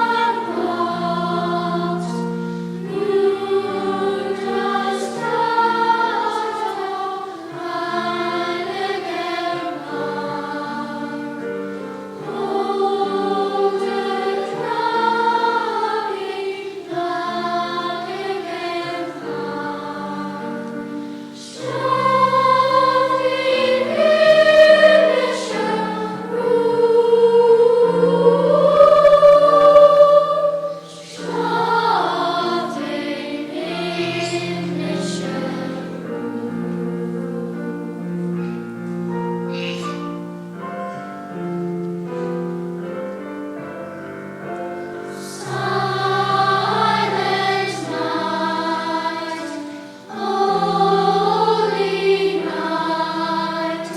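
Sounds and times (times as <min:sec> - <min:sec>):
youth choir singing: 0:00.0 - 0:40.4, 0:43.5 - 0:53.9.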